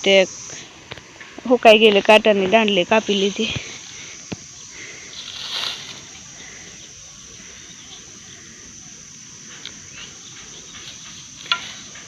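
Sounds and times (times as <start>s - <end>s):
insects chirring: 0.0s - 12.0s
rustling scrape: 5.1s - 6.3s.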